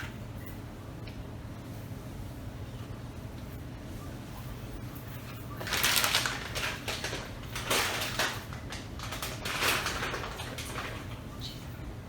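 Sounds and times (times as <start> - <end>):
low room hum: 0.0 - 12.0
rustling crinkling noise: 5.0 - 11.3.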